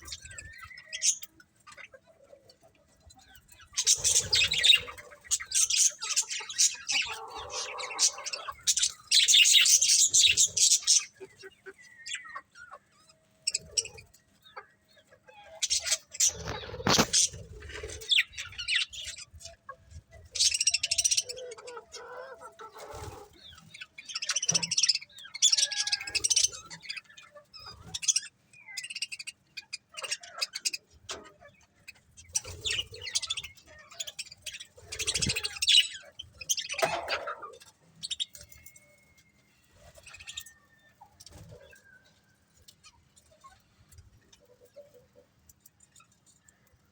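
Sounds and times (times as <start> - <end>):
small parrots chirping: 3.7 - 12.4, 15.6 - 19.5.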